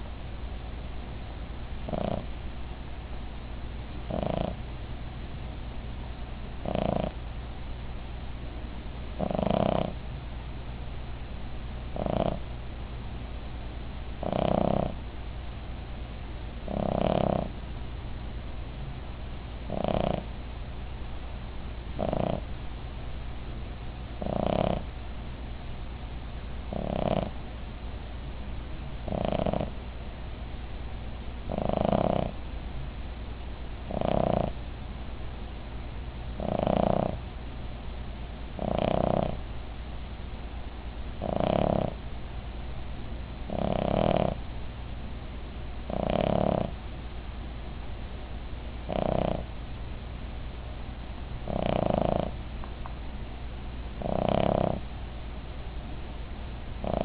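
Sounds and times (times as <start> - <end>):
low steady hum: 0.0 - 57.0
dog snoring: 1.8 - 2.4, 4.0 - 4.7, 6.5 - 7.2, 9.1 - 10.0, 11.9 - 12.5, 14.2 - 15.0, 16.6 - 17.6, 19.6 - 20.3, 21.9 - 22.5, 24.2 - 25.0, 26.6 - 27.4, 29.0 - 29.8, 31.4 - 32.4, 33.8 - 34.6, 36.3 - 37.2, 38.5 - 39.4, 41.2 - 42.0, 43.4 - 44.4, 45.8 - 46.8, 48.8 - 49.6, 51.4 - 52.4, 54.0 - 54.9, 56.7 - 57.0.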